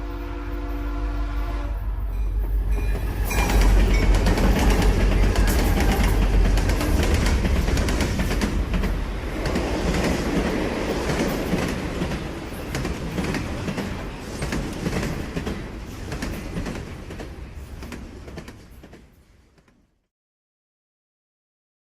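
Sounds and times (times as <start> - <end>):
train rumbling: 0.0 - 19.9
train wheel clicks: 2.4 - 19.8.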